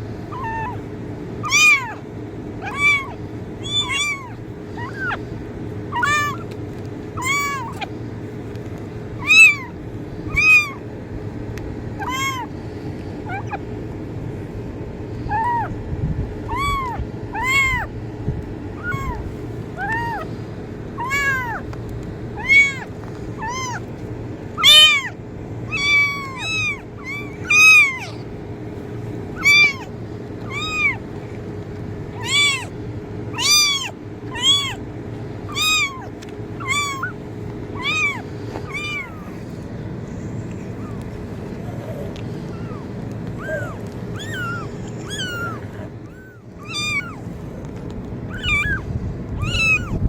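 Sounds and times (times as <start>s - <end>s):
steady low hum: 0.0s - 50.0s
kitten meowing: 0.3s - 5.3s, 5.9s - 8.0s, 9.2s - 10.9s, 12.0s - 12.6s, 13.2s - 13.6s, 15.2s - 15.8s, 16.4s - 18.0s, 18.8s - 20.4s, 21.0s - 21.7s, 22.4s - 23.9s, 24.6s - 28.3s, 29.3s - 31.3s, 32.1s - 34.8s, 35.4s - 47.4s, 48.3s - 50.0s.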